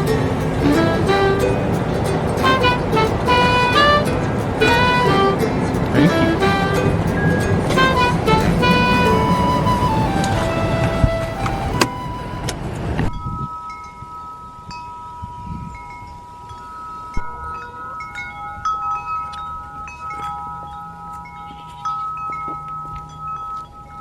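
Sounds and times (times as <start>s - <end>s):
metal chimes ringing: 13.2s - 24.0s.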